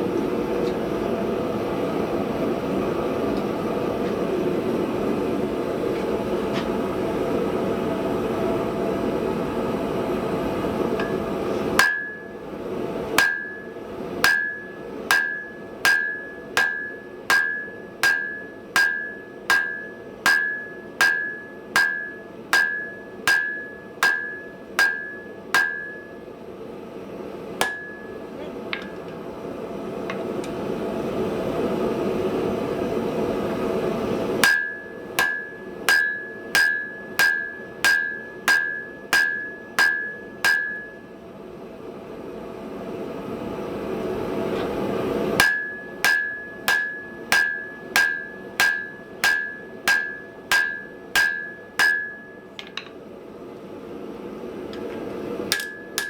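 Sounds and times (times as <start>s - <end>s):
hammer striking steel on anvil: 11.0s - 12.4s, 13.2s - 26.3s, 27.6s - 29.2s, 34.4s - 41.1s, 45.4s - 53.0s, 55.5s - 56.0s.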